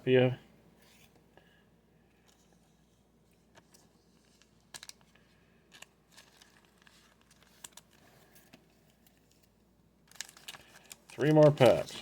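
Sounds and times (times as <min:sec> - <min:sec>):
foil wrapper crinkling and tearing: 0:04.2 - 0:08.1, 0:10.0 - 0:12.0.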